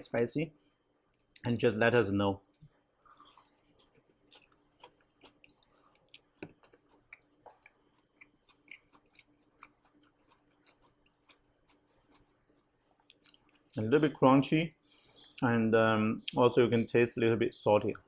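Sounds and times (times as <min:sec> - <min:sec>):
chewing crunchy food: 0:02.4 - 0:13.8, 0:14.8 - 0:15.5.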